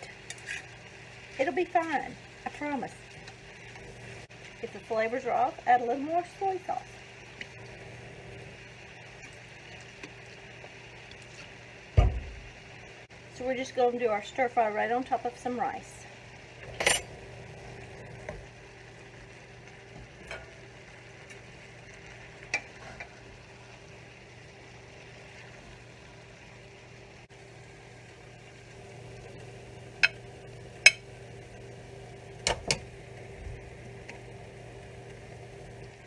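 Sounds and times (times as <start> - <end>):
low hum with hiss: 0.0 - 36.0
utensil clinking on cookware: 16.7 - 17.2, 30.0 - 31.1.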